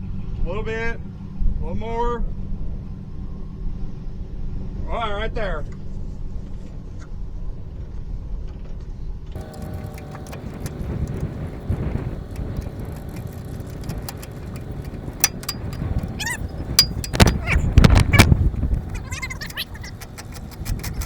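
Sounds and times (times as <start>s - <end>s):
metallic clanks of trailer hitching: 9.4s - 21.0s
vehicle engine running: 9.4s - 21.0s.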